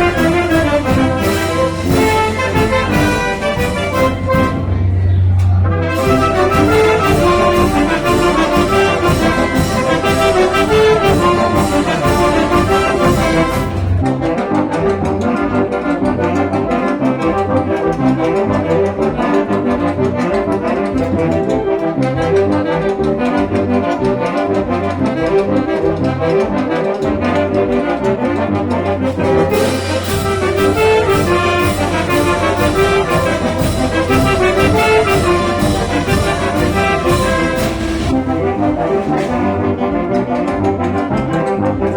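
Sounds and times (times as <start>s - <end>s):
cymbals and drums: 0.0s - 14.7s, 29.0s - 39.7s
wind band playing: 0.0s - 41.9s.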